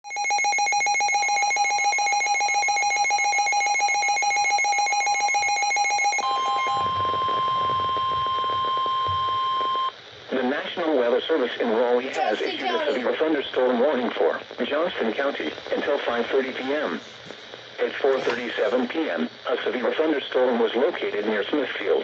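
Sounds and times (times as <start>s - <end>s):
pulsing electronic alarm: 0.1s - 10.0s
radio hiss: 6.2s - 22.0s.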